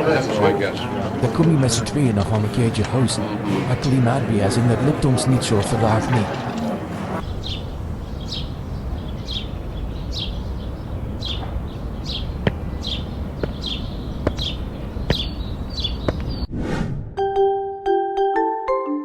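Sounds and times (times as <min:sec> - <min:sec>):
low background rumble: 0:07.1 - 0:16.5
bird chirping: 0:07.2 - 0:16.5.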